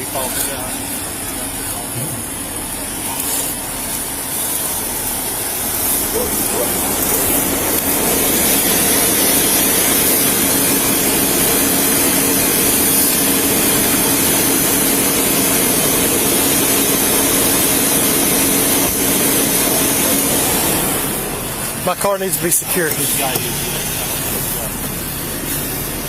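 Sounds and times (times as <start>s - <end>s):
engine humming: 0.0s - 26.0s
loud rushing noise: 4.8s - 21.9s.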